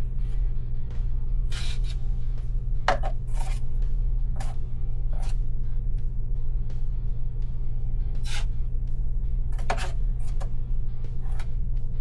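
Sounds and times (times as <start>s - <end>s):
background music: 0.0s - 12.0s
taping knife scraping drywall tape: 1.5s - 2.0s, 8.2s - 8.5s, 9.6s - 10.0s.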